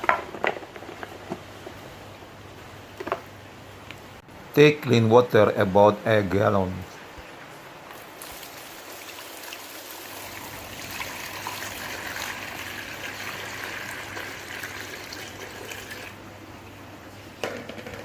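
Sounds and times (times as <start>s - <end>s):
water pouring: 7.9s - 16.2s.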